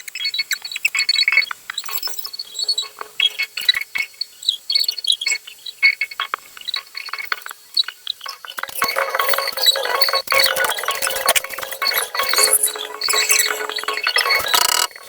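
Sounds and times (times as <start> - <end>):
small hard objects clicking: 8.3 - 15.0.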